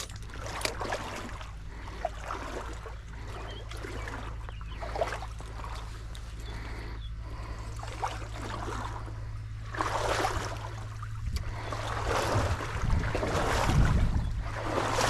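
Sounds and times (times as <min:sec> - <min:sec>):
stream water rushing: 0:07.8 - 0:15.0
wind buffeting microphone: 0:08.2 - 0:15.0.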